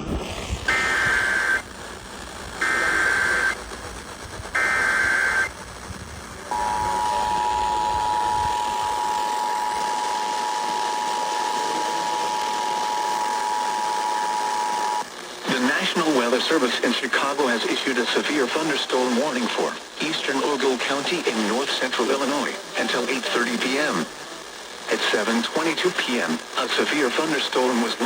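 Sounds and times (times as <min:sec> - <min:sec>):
warbling data burst screech: 0:00.0 - 0:01.8, 0:02.6 - 0:03.6, 0:04.5 - 0:05.6
two-tone alert signal: 0:06.5 - 0:15.0.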